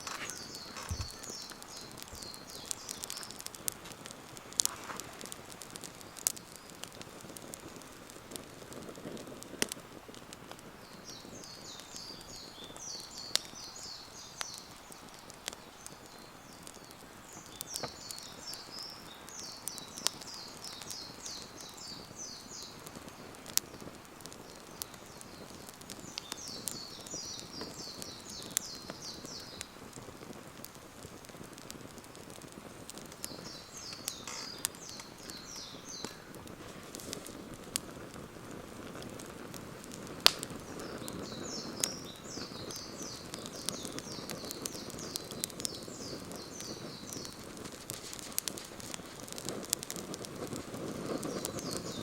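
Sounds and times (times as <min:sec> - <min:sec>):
campfire crackling and popping: 0:00.0 - 0:52.0
bird twittering: 0:00.1 - 0:03.3.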